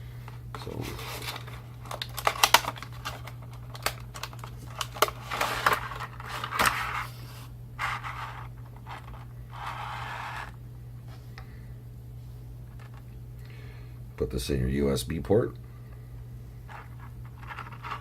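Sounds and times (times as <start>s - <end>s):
low electrical hum: 0.0s - 18.0s
scraping and rustling: 0.6s - 11.3s, 16.6s - 18.0s.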